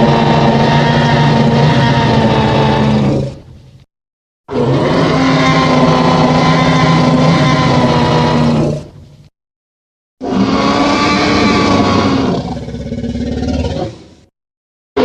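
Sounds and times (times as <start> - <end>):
monster roar: 0.0 - 3.4, 4.5 - 8.9, 10.2 - 14.0.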